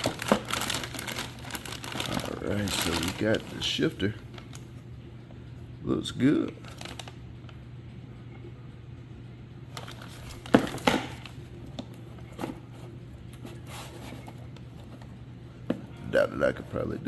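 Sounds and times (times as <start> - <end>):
plastic packaging crinkling: 0.0 - 4.7, 6.6 - 7.2
steady low hum: 0.0 - 17.0.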